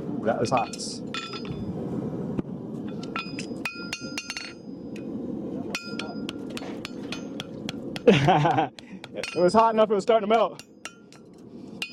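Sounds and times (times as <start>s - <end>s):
hammer striking steel on anvil: 3.0s - 4.6s, 5.7s - 8.1s, 9.0s - 9.7s, 10.4s - 11.9s.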